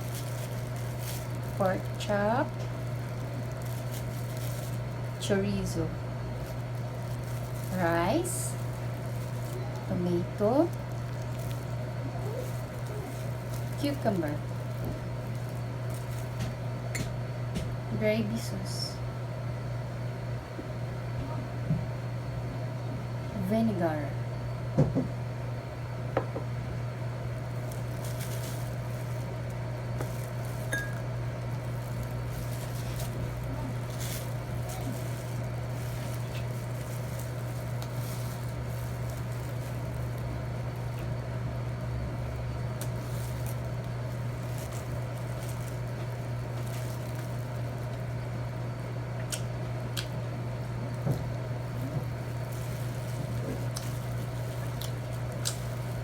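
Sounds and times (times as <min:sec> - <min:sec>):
steady low hum: 0:00.0 - 0:56.0
soft wet eating sounds: 0:51.8 - 0:56.0.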